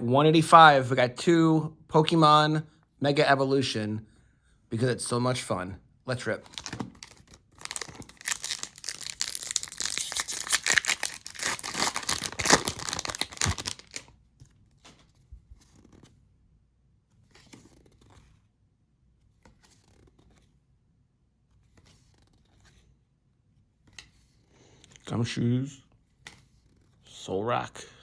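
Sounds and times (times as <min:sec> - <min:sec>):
faint card rustles: 0:06.3 - 0:16.2, 0:21.5 - 0:23.0
wrapper crinkling and tearing: 0:06.4 - 0:14.1.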